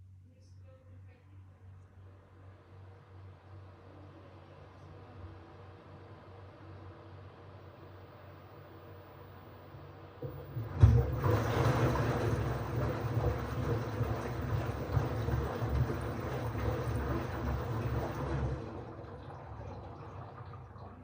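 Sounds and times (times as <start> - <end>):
washing machine drum turning: 10.2 - 21.0
water churning: 10.2 - 21.0.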